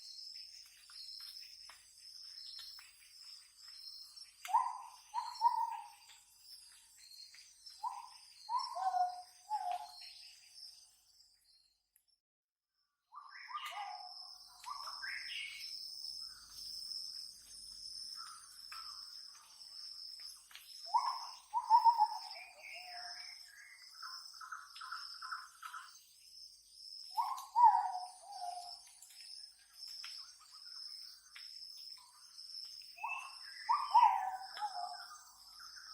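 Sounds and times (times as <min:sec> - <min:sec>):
birds singing: 0:00.0 - 0:11.7, 0:13.1 - 0:35.9
high insect chirping: 0:13.4 - 0:35.9.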